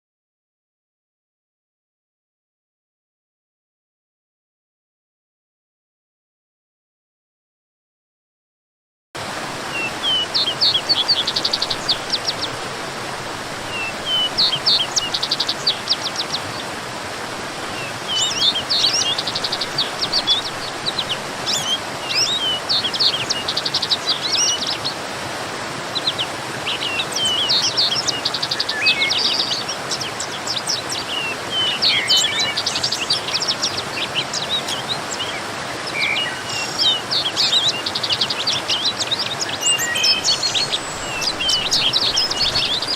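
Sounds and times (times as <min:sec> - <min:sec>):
waterfall rushing: 0:09.2 - 0:42.9
songbirds chirping and trilling: 0:09.4 - 0:42.9.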